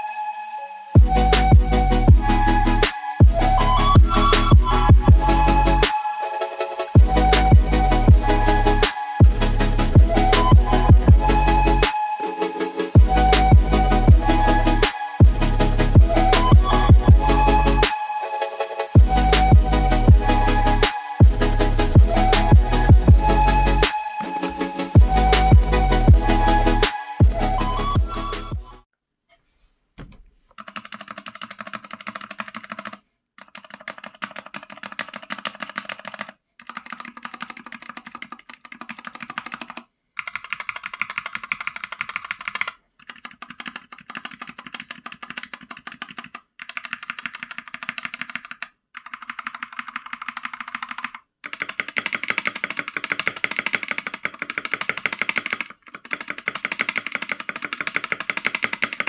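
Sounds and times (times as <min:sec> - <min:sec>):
mechanical keyboard typing: 0:30.0 - 0:59.0.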